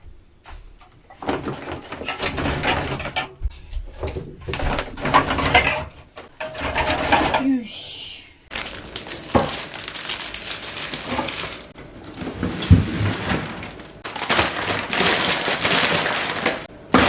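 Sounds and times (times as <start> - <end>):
plastic packaging rustling: 1.0 - 3.2, 8.5 - 17.0.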